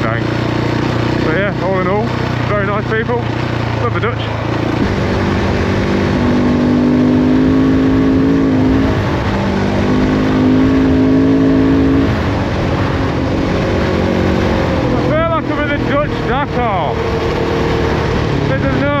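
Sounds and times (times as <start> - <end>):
motorcycle engine running: 0.0 - 19.0
wind noise: 3.2 - 19.0.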